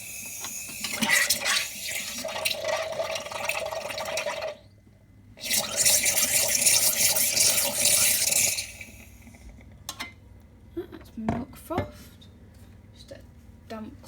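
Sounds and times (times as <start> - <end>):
steam wand hissing and gurgling: 0.0 - 2.5, 5.4 - 9.5.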